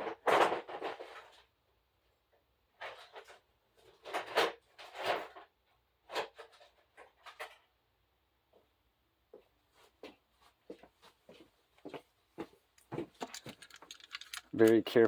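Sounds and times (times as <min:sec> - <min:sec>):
small plastic and metal parts rattling: 0:12.8 - 0:15.0.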